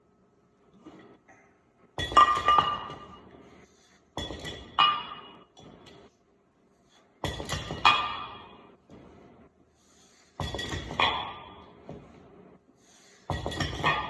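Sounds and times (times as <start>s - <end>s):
metal weights clanking: 13.3s - 14.0s.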